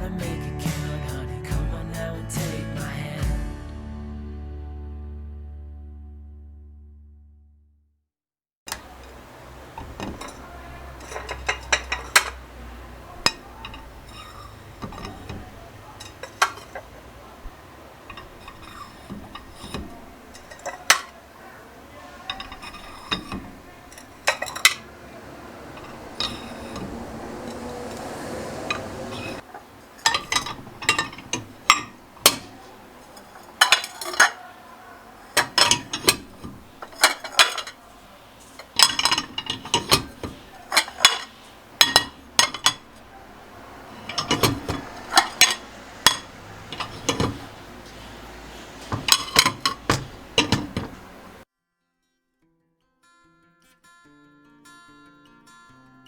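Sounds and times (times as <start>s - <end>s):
dishes and cutlery clinking: 8.7s - 51.4s.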